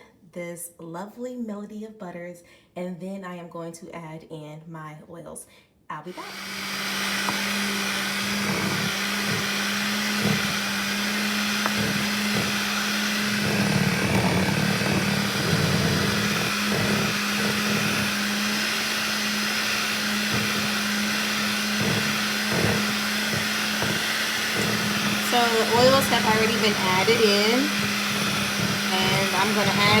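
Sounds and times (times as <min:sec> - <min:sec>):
electric mixer humming: 0:06.1 - 0:30.0.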